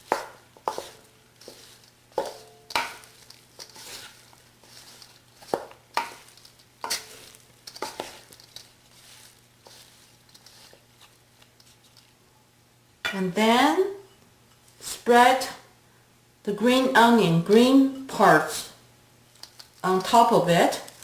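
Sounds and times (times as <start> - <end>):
utensil scraping a pot: 0.0 - 10.9.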